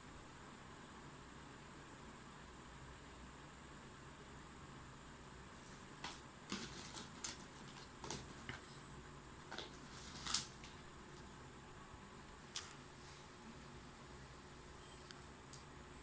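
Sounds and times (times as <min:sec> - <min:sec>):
cats scratching and pawing at toy: 0:05.5 - 0:11.3.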